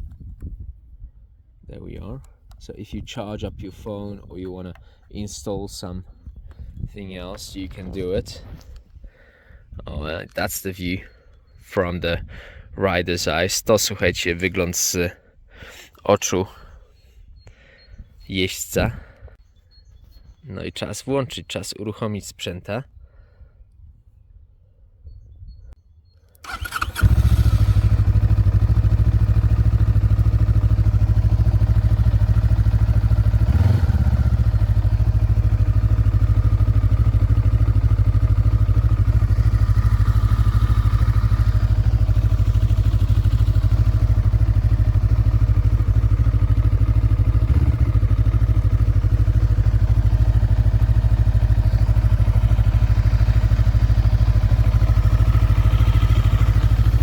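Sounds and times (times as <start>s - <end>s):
motorcycle engine starting and idling: 26.4s - 57.0s.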